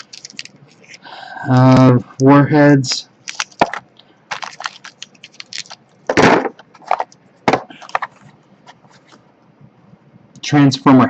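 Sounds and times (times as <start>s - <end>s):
packaging clicks and crinkles: 0.0s - 1.0s, 3.2s - 8.3s
packaging rustle: 0.0s - 1.0s, 3.2s - 9.2s.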